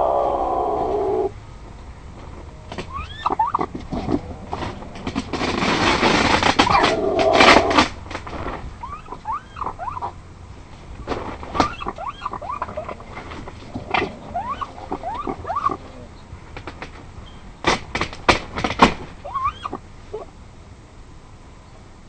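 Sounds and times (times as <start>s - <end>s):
animal squeaky chirps: 2.9s - 3.7s, 8.8s - 10.2s, 11.5s - 13.0s, 14.2s - 16.2s, 19.2s - 20.3s.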